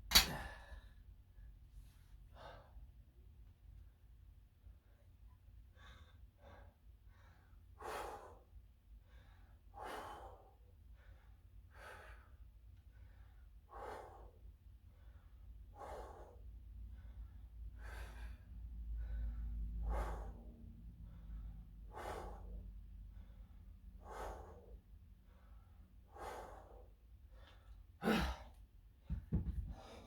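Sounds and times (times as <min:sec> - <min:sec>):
man exhaling forcefully: 0:28.0 - 0:28.5.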